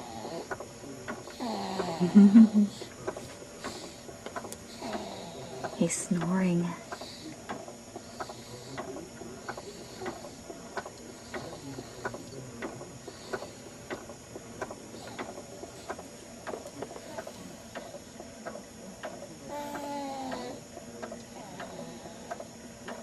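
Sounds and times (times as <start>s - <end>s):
baby snoring softly: 0.0s - 0.5s, 1.3s - 2.1s, 4.7s - 6.0s, 6.7s - 7.4s, 8.0s - 10.4s, 11.1s - 12.2s, 19.3s - 20.6s, 21.3s - 22.5s
baby swing ticking: 0.0s - 23.0s.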